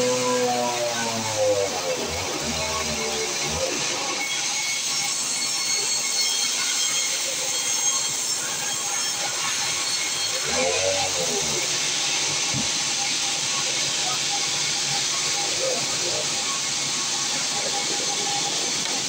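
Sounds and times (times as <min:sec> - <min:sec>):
sawmill saw cutting log: 0:00.0 - 0:19.0.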